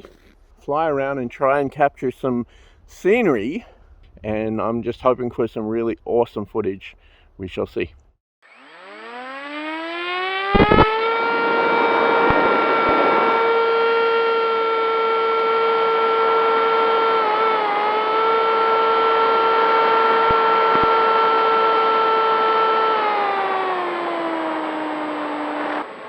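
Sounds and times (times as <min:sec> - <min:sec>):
electric motor high whine: 0:08.4 - 0:26.0.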